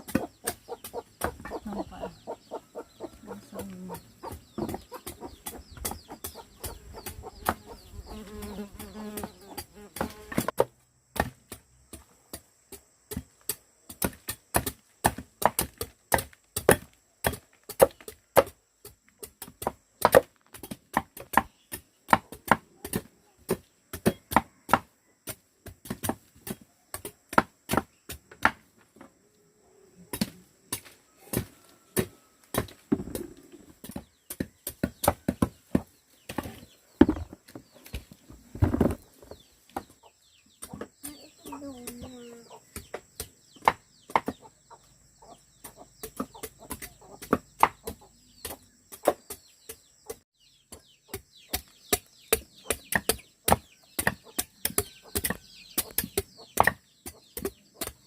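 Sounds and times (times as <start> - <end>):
chickens clucking: 0.0 - 10.3, 30.1 - 58.0.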